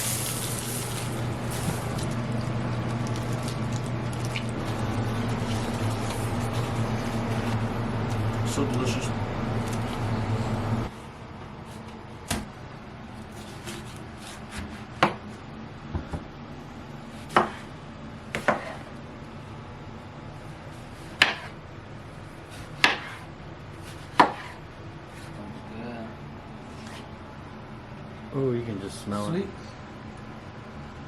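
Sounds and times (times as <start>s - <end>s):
knife chopping on cutting board: 13.6s - 15.2s, 17.2s - 17.7s, 18.3s - 18.9s, 21.1s - 21.6s, 22.5s - 23.2s, 23.8s - 24.6s.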